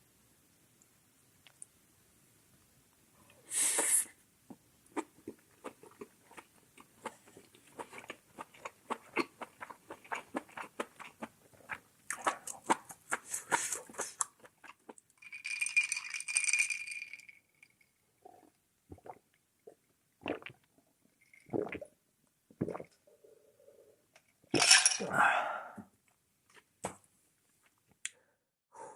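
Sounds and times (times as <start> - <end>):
short hiss: 3.5 - 4.2
wet chewing and mouth smacks: 4.9 - 15.1.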